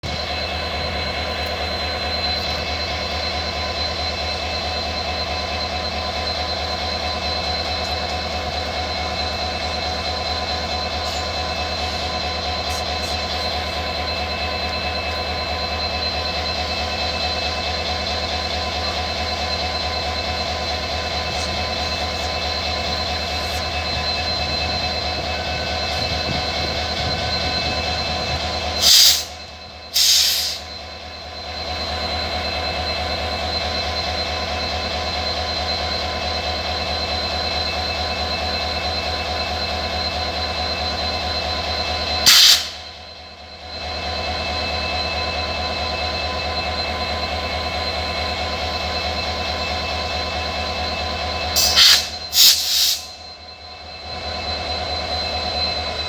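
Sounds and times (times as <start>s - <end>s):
diesel locomotive engine humming: 0.0s - 56.0s
loud bursts of hiss: 30.0s - 30.6s, 42.3s - 42.8s, 51.6s - 53.1s.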